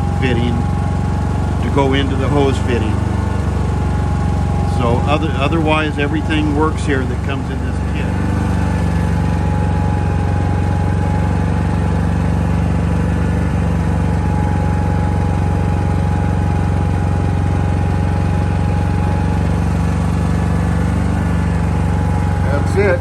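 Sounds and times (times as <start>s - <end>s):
thin steady whine: 0.0s - 17.3s
generator engine hum: 0.0s - 23.0s.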